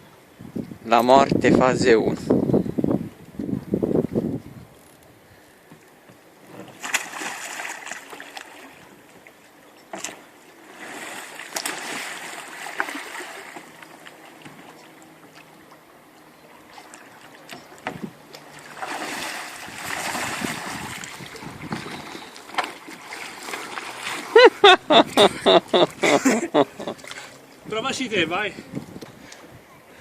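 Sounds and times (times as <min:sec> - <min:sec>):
water splashing around kayak: 0:05.6 - 0:29.6.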